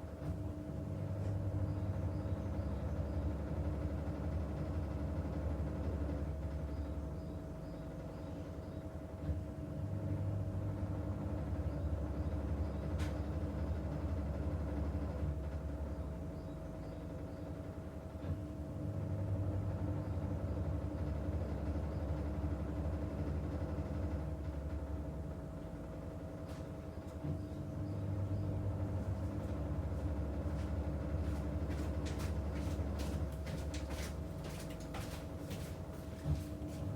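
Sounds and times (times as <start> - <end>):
washing machine running: 17.1 - 36.9.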